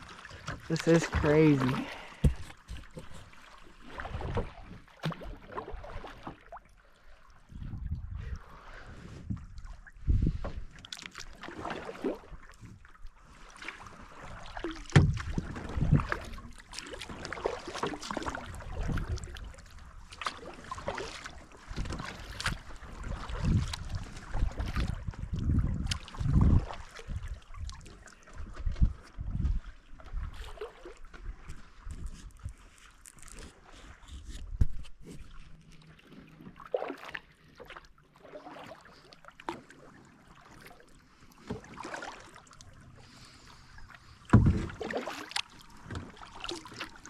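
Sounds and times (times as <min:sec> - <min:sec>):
paddle splashing in water: 0:00.0 - 0:47.0
wind rumble on microphone: 0:07.4 - 0:10.7, 0:15.0 - 0:16.3, 0:22.9 - 0:30.5.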